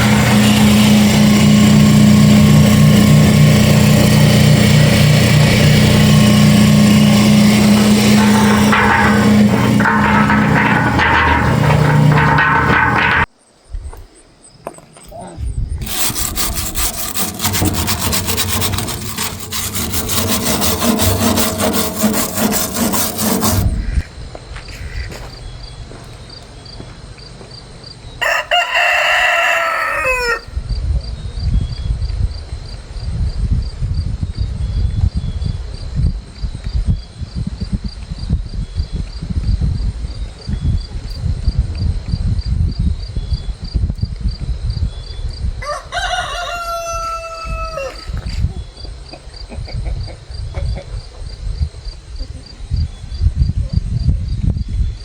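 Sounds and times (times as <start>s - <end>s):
low uneven rumble: 5.6s - 13.3s
rooster crowing: 28.2s - 30.5s, 45.6s - 48.2s.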